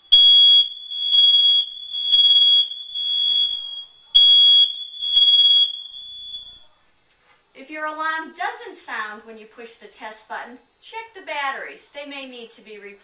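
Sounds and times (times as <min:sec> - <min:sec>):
smoke alarm beeping: 0:00.0 - 0:06.8.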